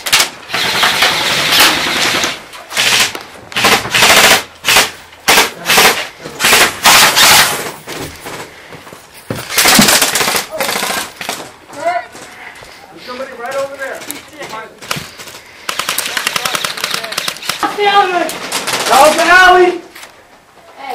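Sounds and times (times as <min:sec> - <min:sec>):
airsoft rifle bursts: 0:00.1 - 0:07.5, 0:15.1 - 0:18.0.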